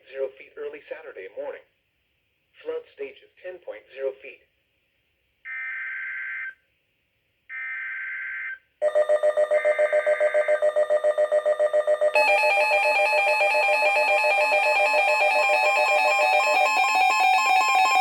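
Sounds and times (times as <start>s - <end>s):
rapidly pulsing electronic alert tone: 12.1s - 18.0s.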